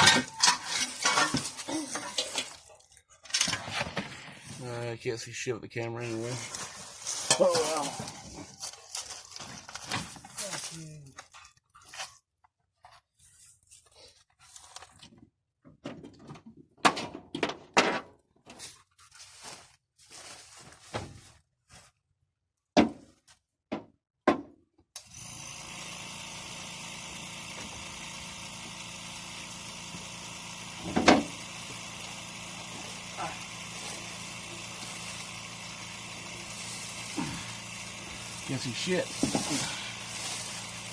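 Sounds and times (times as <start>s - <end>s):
steady mechanical hum: 25.1s - 40.9s.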